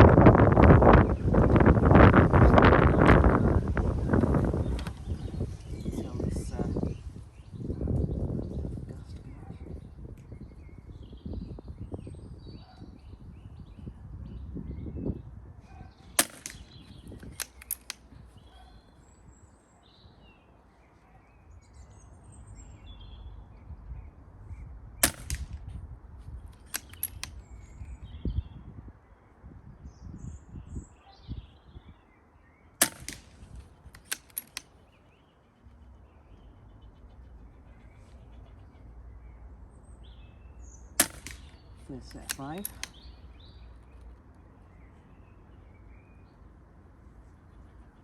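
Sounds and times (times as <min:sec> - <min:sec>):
air rifle shot crack: 0:16.1 - 0:18.1, 0:25.0 - 0:25.8, 0:32.8 - 0:34.7, 0:41.0 - 0:43.2
light clicks: 0:16.2 - 0:18.2, 0:33.9 - 0:34.8, 0:41.0 - 0:43.2.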